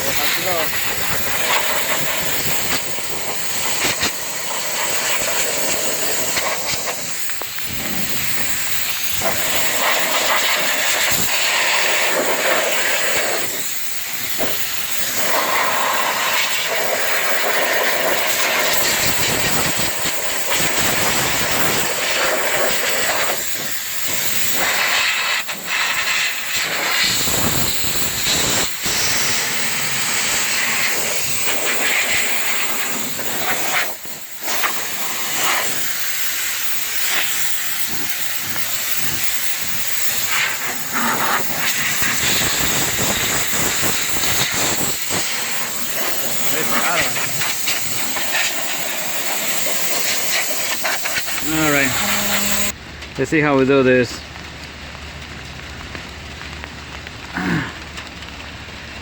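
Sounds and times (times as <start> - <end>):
gas hissing from hose nozzle: 0.0 - 52.8.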